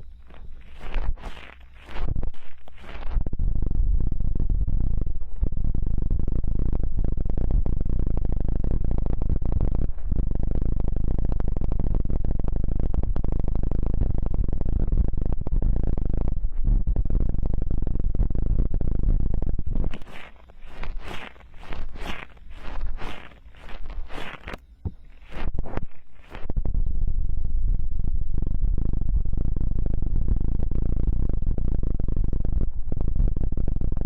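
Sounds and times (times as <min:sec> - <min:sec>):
rubbing on microphone: 0:00.0 - 0:11.4, 0:13.6 - 0:27.1.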